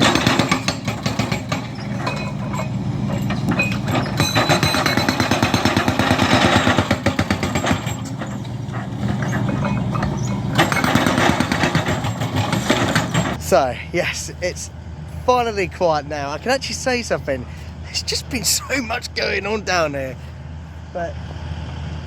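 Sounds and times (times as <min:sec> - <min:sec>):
rapid clattering hammering impacts: 0:00.0 - 0:13.4
diesel engine hum: 0:00.0 - 0:22.0.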